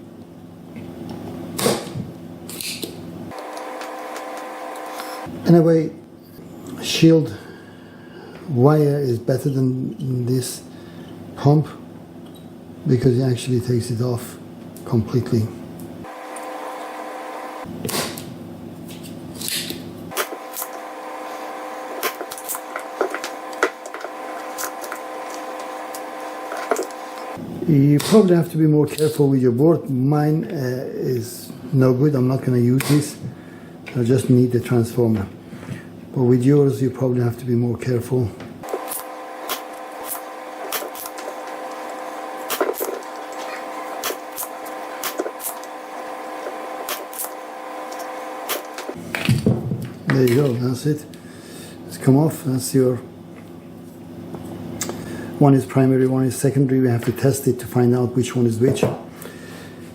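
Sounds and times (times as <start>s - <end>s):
faint electrical hum: 0.0s - 59.9s
soldering iron buzz: 2.5s - 5.4s, 15.8s - 28.2s, 38.6s - 49.3s
desoldering pump hissing rush: 38.6s - 49.0s.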